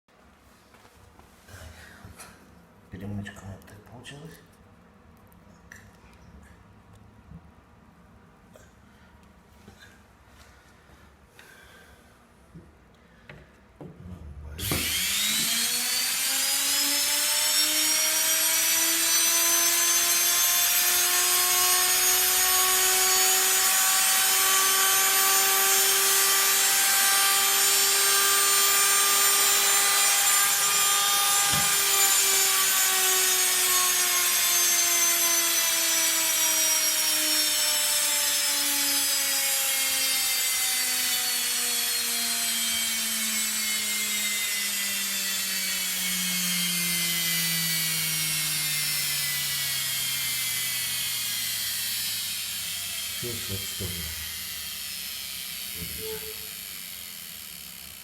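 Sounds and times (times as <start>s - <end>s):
electric motor whining: 14.6s - 58.0s.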